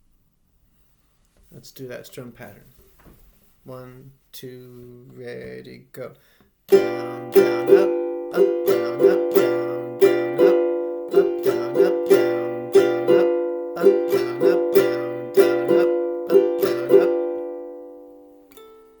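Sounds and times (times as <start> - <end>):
ukulele strumming: 6.7 - 19.0.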